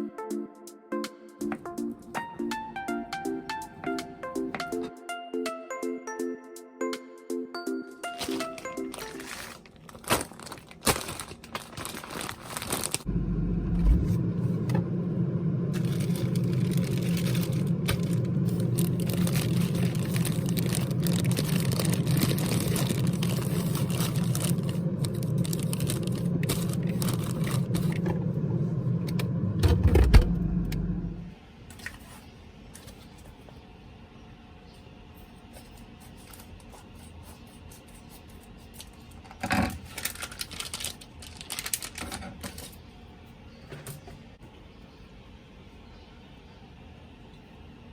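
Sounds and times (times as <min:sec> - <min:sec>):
appliance motor humming: 0:13.1 - 0:31.3.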